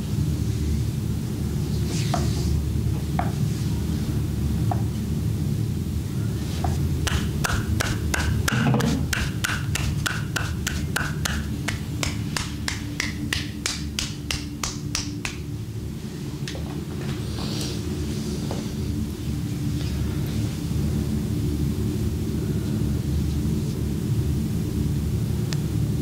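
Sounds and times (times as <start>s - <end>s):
hands slapping on skin: 7.1s - 15.5s.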